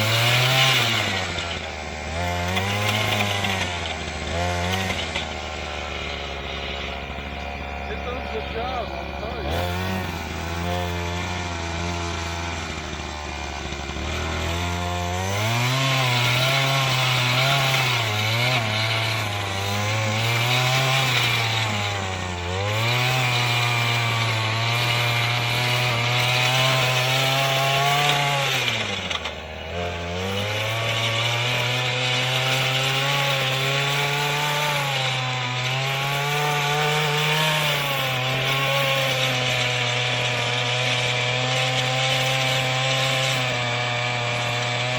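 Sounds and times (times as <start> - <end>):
tiller two-stroke engine running: 0.0 - 44.9.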